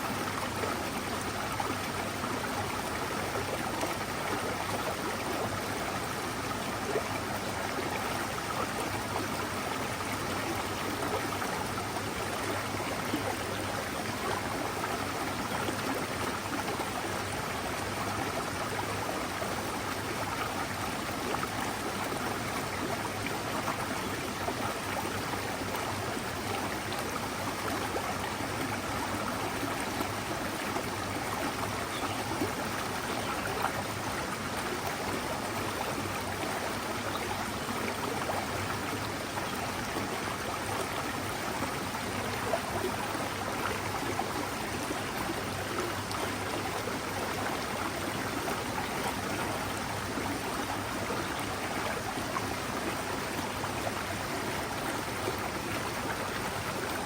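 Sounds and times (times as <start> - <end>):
stream flowing over rocks: 0.0 - 57.0.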